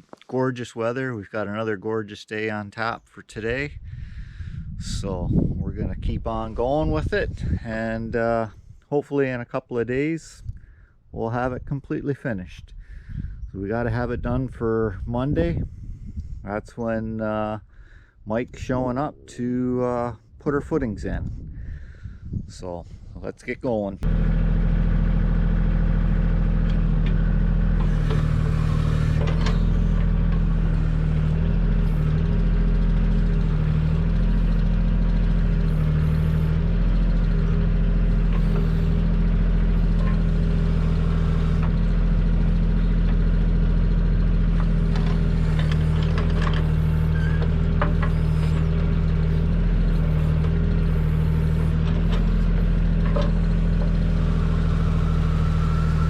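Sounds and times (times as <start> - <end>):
tractor diesel engine running: 24.0 - 56.0
backhoe clanks: 26.0 - 56.0.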